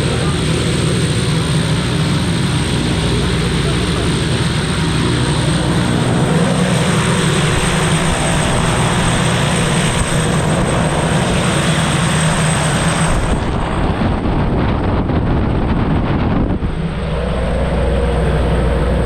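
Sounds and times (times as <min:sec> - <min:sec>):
propeller plane engine drone: 0:00.0 - 0:19.0
rushing air noise: 0:04.1 - 0:19.0.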